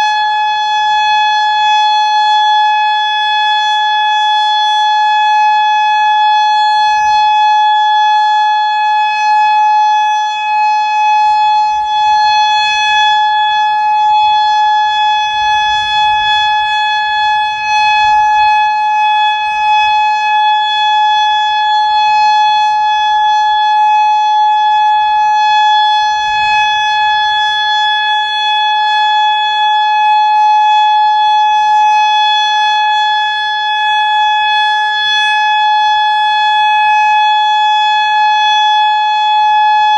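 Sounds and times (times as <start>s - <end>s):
warning siren steady tone: 0.0s - 39.9s.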